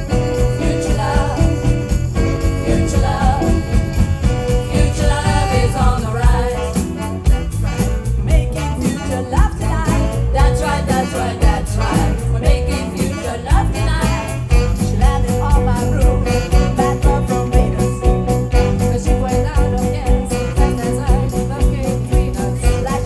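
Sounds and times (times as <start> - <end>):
person singing: 0.0 - 7.2, 8.3 - 23.0
live band playing: 0.0 - 23.0.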